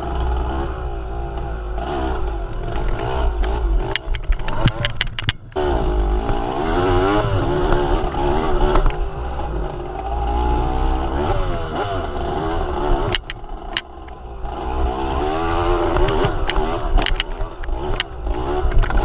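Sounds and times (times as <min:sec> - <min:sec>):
vehicle engine revving: 0:00.0 - 0:19.0
sharp clicks: 0:02.5 - 0:05.6, 0:13.0 - 0:14.2, 0:15.8 - 0:19.0.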